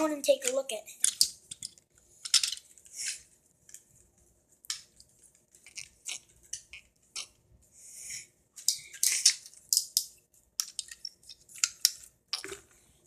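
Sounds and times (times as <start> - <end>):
plastic toy pieces clicking: 0.4 - 3.2, 8.6 - 12.5.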